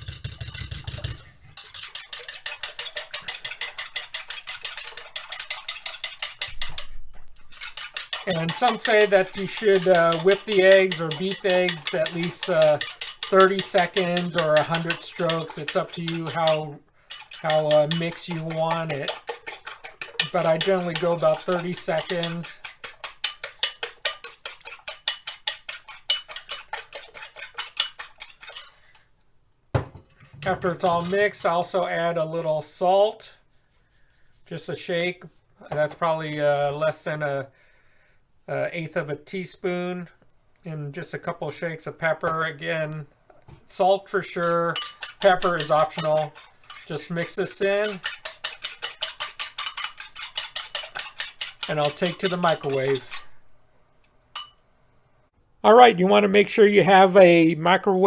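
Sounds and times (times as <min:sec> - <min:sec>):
whisk clicking against bowl: 0:00.0 - 0:28.7, 0:44.3 - 0:53.4.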